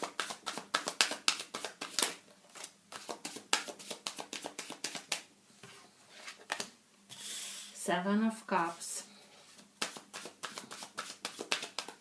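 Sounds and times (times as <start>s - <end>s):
cards being shuffled: 0.0s - 5.2s, 9.8s - 12.0s.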